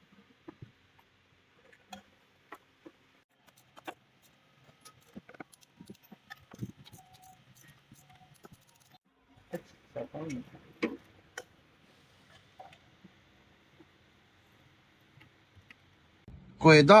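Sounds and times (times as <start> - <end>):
metal tools clicking and tapping: 3.4 - 9.0.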